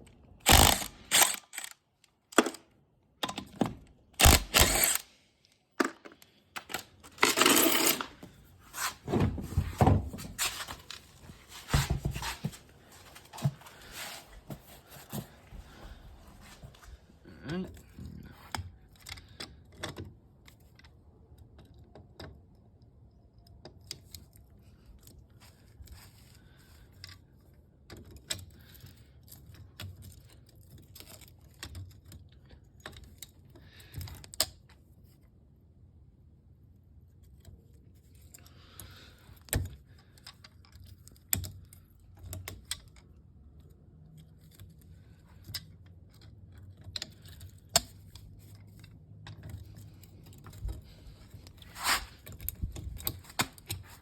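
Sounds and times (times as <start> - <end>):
metal tools clinking: 6.6 - 8.3.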